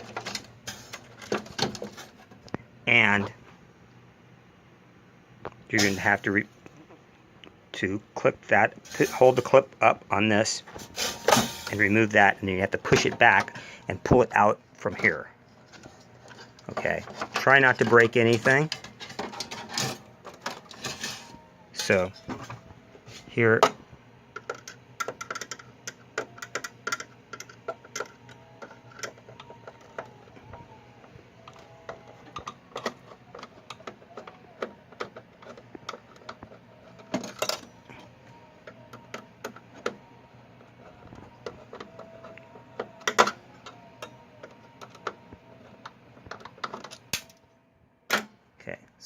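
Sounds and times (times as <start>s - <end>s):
plastic and metal parts clicking: 24.4s - 30.7s, 31.4s - 38.0s, 38.6s - 47.4s.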